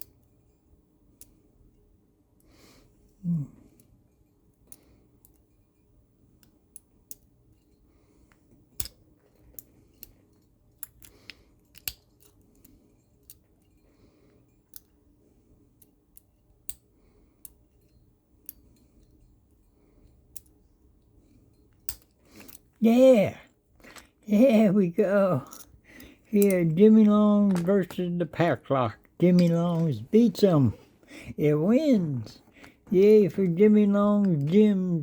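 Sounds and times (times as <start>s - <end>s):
lock pick clicking in padlock: 10.8s - 12.4s.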